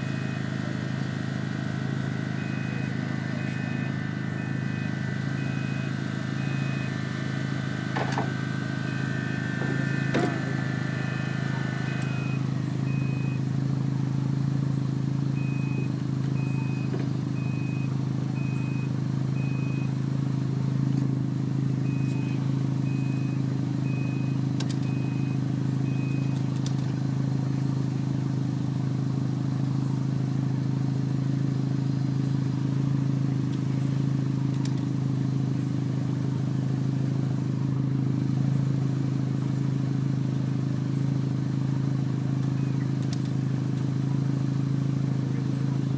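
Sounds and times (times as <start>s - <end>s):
thin high beeps: 2.3s - 13.4s
sharp clicks: 42.4s - 43.4s.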